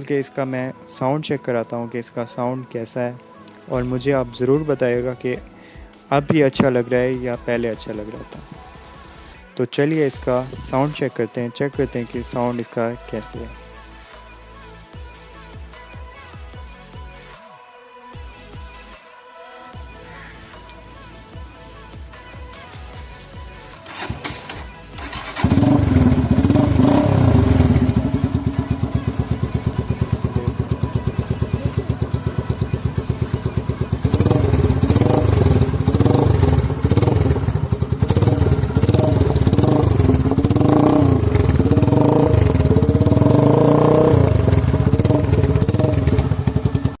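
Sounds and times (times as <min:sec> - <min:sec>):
motorcycle engine idling and revving: 0:23.2 - 0:47.0.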